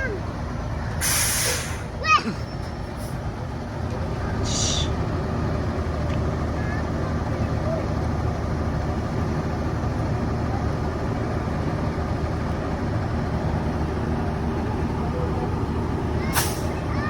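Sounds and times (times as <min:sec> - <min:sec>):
diesel bus engine rumbling: 0:00.0 - 0:17.0
sharp air hiss: 0:01.0 - 0:01.9.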